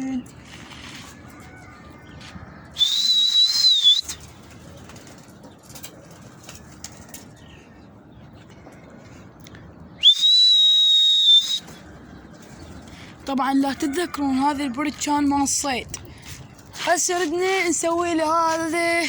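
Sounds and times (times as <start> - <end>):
loud sharp whistles: 2.8 - 4.2, 10.0 - 11.8.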